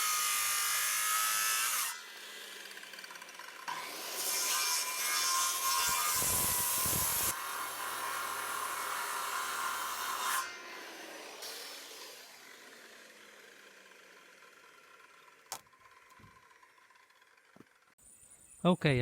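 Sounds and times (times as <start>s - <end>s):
saw blade winding down: 0.0s - 17.4s
power saw cutting wood: 0.0s - 17.6s.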